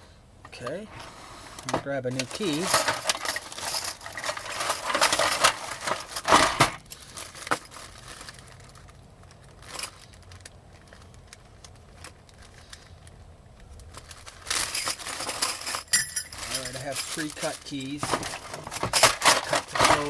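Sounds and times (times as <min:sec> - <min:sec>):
rustling and crinkling: 0:00.0 - 0:20.0.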